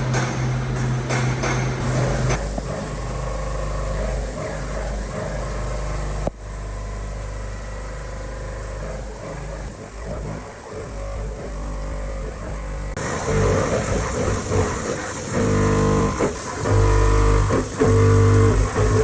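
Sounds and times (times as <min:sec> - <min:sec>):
sharp metallic knocks: 0:00.0 - 0:02.7
low machine hum: 0:00.0 - 0:19.0
machine running: 0:01.8 - 0:19.0.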